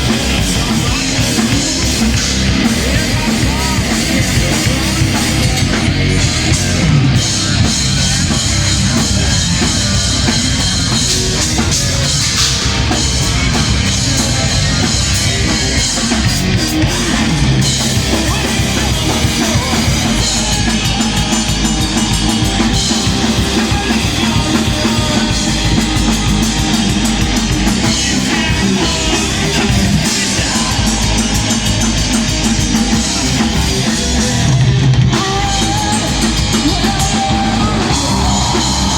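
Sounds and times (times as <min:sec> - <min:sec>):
distorted electric guitars: 0:00.0 - 0:38.9
fast drumming: 0:00.0 - 0:38.9.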